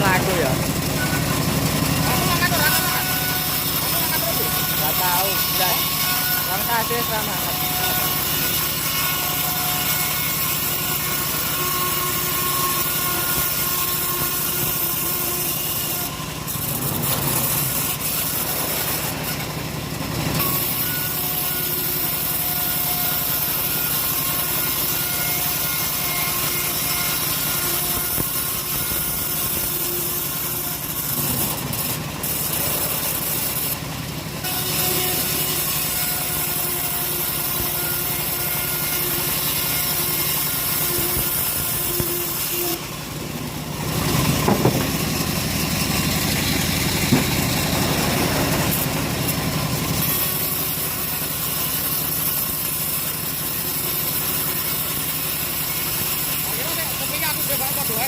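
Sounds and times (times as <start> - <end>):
engine drone: 0.0 - 24.8, 25.5 - 51.9
sawmill saw cutting timber: 0.0 - 58.0.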